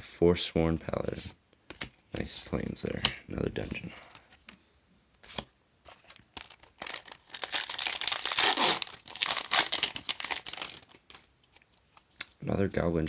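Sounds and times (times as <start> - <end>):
foil wrapper crinkling: 6.0 - 11.3.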